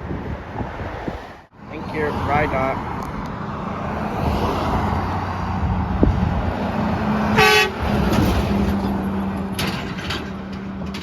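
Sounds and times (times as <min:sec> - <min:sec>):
passing road traffic: 0:00.0 - 0:11.0
vehicle horn toot: 0:07.4 - 0:07.8.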